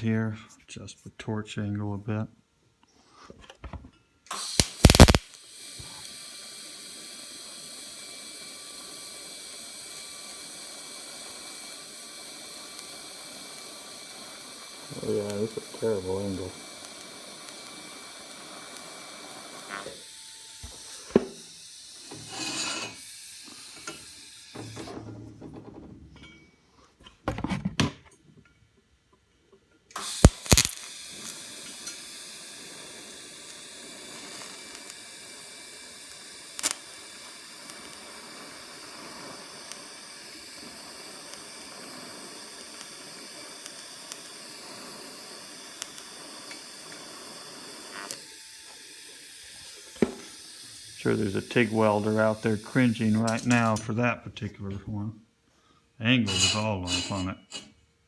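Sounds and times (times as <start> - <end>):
welding arc hissing: 4.3 - 24.6, 29.9 - 53.8, 56.3 - 57.7
sharp click: 4.6 - 5.4, 30.3 - 30.8.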